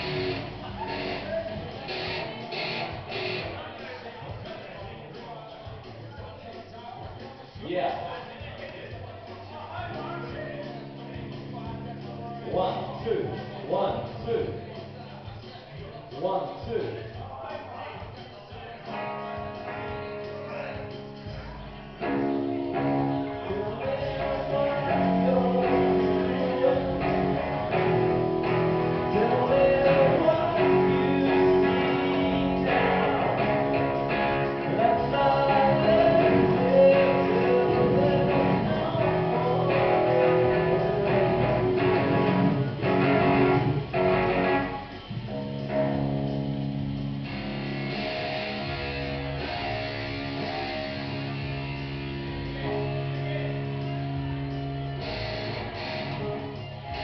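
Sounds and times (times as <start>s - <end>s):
strummed guitar: 0.0s - 4.0s, 18.8s - 57.0s
live band through a pa: 0.0s - 6.0s, 18.2s - 57.0s.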